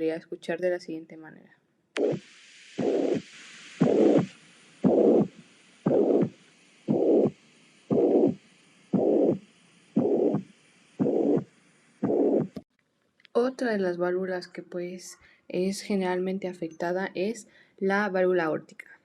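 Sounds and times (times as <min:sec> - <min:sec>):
faint steady hiss: 0:00.0 - 0:19.0
heart murmur: 0:02.0 - 0:02.2, 0:02.8 - 0:03.2, 0:03.8 - 0:08.4, 0:09.0 - 0:09.4, 0:10.0 - 0:12.6.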